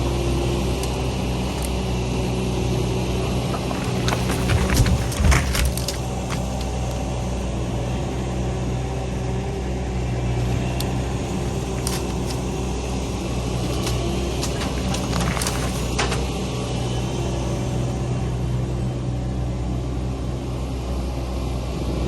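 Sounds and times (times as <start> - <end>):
light clicks and rattles: 3.0 - 7.3, 10.6 - 16.4.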